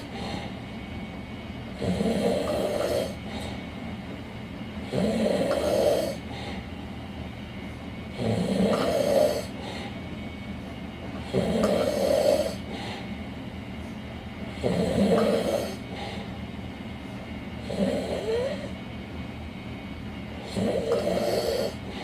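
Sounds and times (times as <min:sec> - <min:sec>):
quiet breathing: 0:00.0 - 0:19.0, 0:19.8 - 0:22.0
person snoring loudly: 0:01.8 - 0:03.5, 0:04.9 - 0:06.5, 0:08.2 - 0:09.8, 0:11.2 - 0:12.8, 0:14.6 - 0:16.0, 0:17.6 - 0:18.7, 0:20.4 - 0:22.0.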